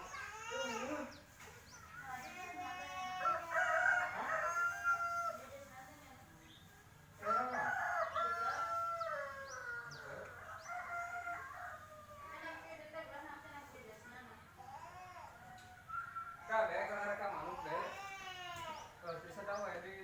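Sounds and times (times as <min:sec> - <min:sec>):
rooster crowing: 0:03.2 - 0:05.5, 0:07.2 - 0:12.4.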